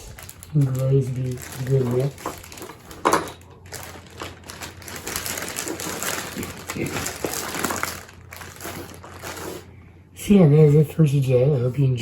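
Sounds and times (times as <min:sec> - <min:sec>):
pencils clicking and rattling: 0:00.1 - 0:09.4.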